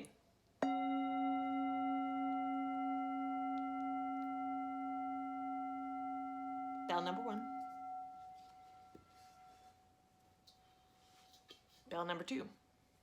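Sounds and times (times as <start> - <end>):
bell ringing: 0.6 - 9.7.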